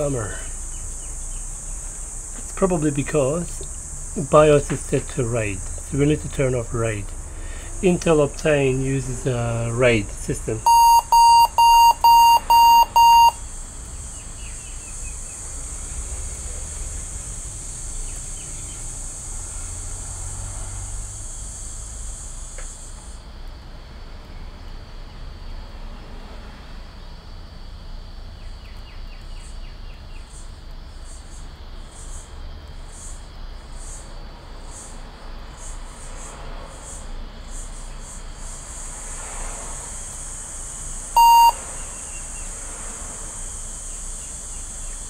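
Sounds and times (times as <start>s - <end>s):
steady low hiss: 0.0s - 25.7s
short electronic beeps: 10.6s - 13.4s, 41.2s - 41.6s.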